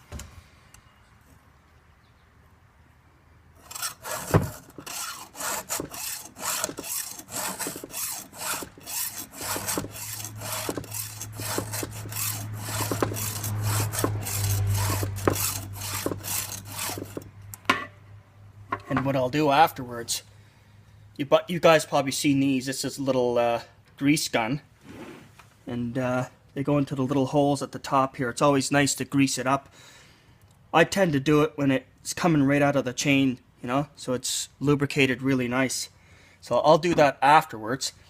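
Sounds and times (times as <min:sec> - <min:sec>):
file rasping on chainsaw chain: 0:03.6 - 0:17.3.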